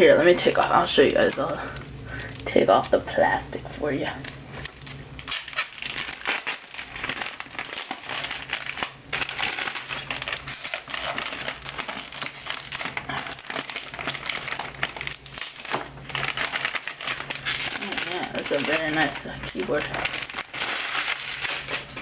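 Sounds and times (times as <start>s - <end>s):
plastic wrap crinkling: 0.0s - 3.1s, 4.2s - 22.0s.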